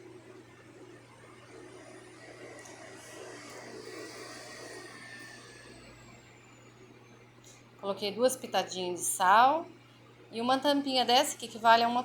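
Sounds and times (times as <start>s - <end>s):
blender whirring: 1.4s - 6.9s.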